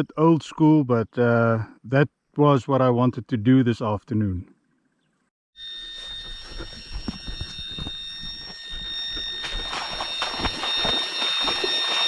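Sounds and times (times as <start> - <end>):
electronic bite alarm tone: 5.6 - 12.0.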